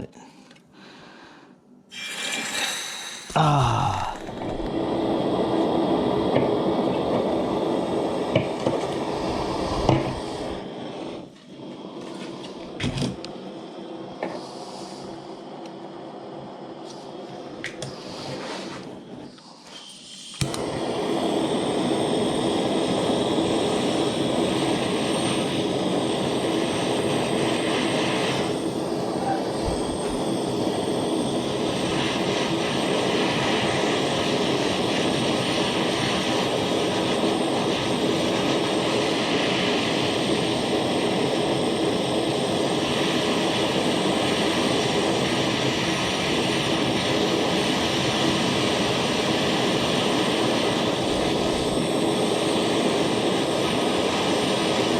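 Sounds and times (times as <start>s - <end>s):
soldering torch hissing: 1.9s - 54.9s.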